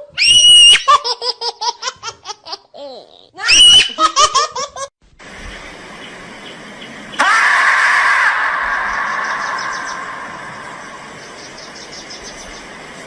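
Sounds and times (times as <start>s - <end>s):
shrill squeal: 0.1s - 0.9s
high-pitched laughter: 0.6s - 4.9s
steady hiss: 5.0s - 7.3s, 8.5s - 13.0s.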